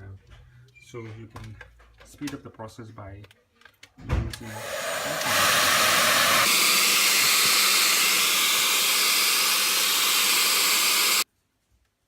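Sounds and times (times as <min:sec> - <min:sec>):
hair dryer blowing: 0:04.4 - 0:11.2.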